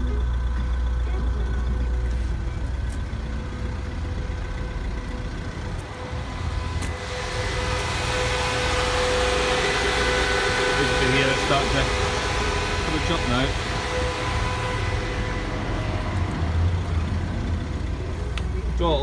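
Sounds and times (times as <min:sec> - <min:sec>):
diesel engine idling: 0:00.0 - 0:19.0
fan whooshing: 0:05.4 - 0:19.0.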